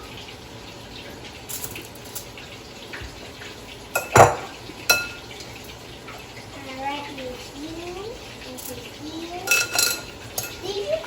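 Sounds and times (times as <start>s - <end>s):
metal utensils and dishes clinking: 1.5s - 2.4s, 4.0s - 5.2s, 9.4s - 11.0s.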